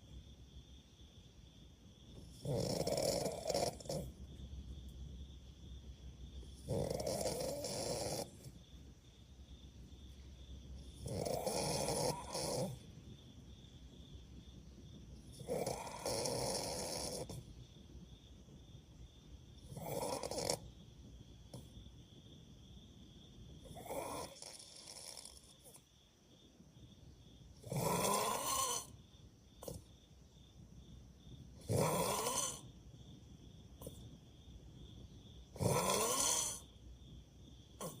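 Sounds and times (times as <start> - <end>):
person snoring: 2.4 - 4.1, 6.6 - 8.4, 11.0 - 12.8, 15.4 - 17.4, 19.8 - 20.6, 23.8 - 25.8, 27.6 - 28.9, 31.7 - 32.6, 35.6 - 36.7.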